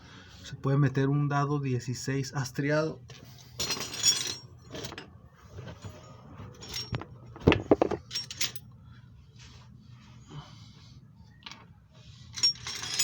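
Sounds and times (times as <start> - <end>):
metal tools clinking and rattling: 3.6 - 5.1, 6.5 - 8.6, 12.3 - 13.0.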